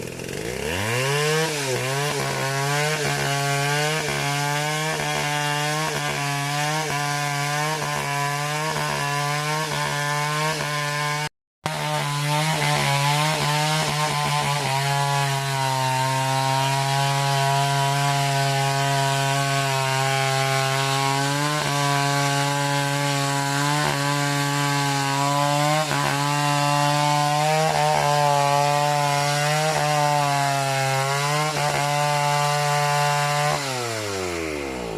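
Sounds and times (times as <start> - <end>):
chainsaw cutting wood: 0.0 - 34.9.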